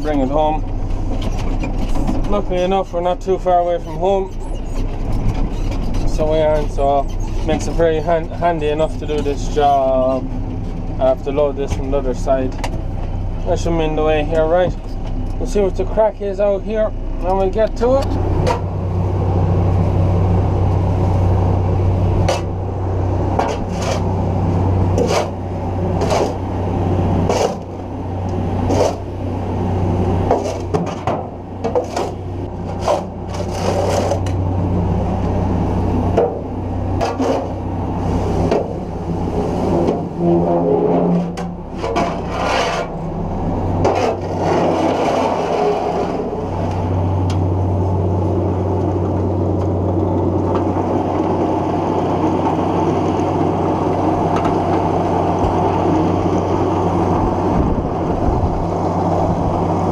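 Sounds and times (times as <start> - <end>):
tractor engine running: 0.0 - 59.9
scraping and knocking: 39.7 - 43.0, 43.8 - 46.2.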